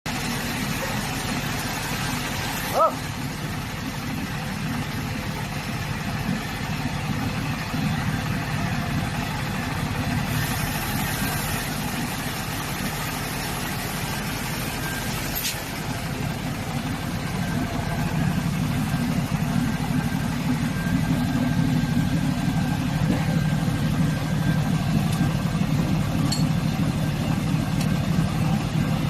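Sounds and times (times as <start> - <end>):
drilling rig engine running: 0.1 - 29.0
hiss: 10.3 - 12.4.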